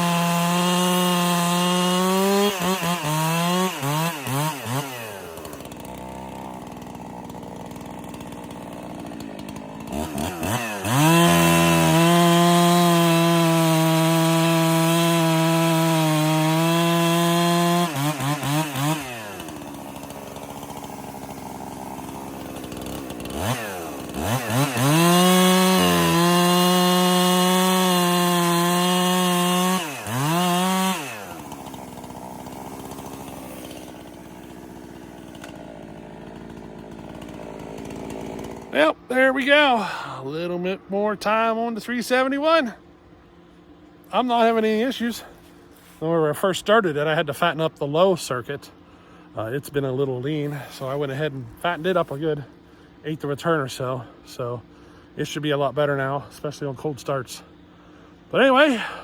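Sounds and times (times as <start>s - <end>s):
chainsaw revving and idling: 0.0s - 59.0s.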